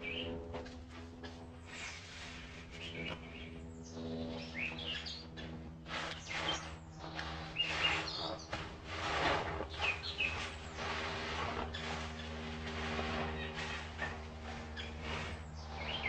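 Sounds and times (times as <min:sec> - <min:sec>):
wild birds chirping: 0:00.0 - 0:00.4, 0:01.2 - 0:08.6, 0:09.6 - 0:16.0
steady low hum: 0:00.0 - 0:16.0.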